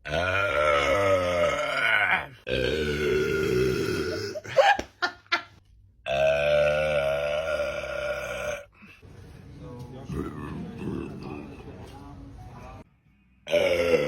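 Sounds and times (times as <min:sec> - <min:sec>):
man belching: 0:00.0 - 0:04.5, 0:06.1 - 0:08.7, 0:13.5 - 0:14.0.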